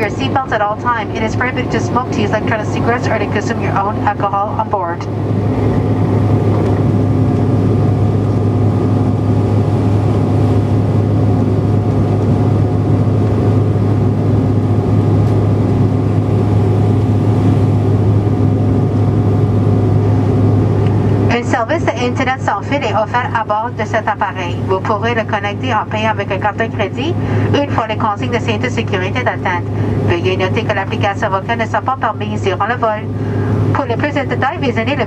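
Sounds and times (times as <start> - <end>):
steady tones: 0.0 - 11.8
jet engines in cabin: 0.0 - 35.0.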